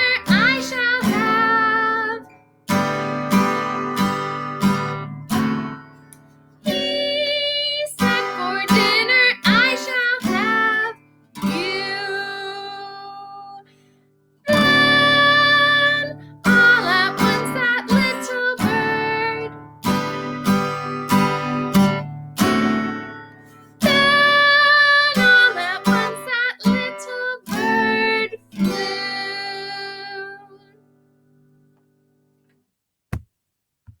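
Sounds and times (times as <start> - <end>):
person singing: 0.0 - 2.3, 6.7 - 13.6, 14.5 - 19.6, 23.8 - 30.7
acoustic guitar strumming: 0.0 - 7.4, 8.0 - 13.2, 14.5 - 31.6.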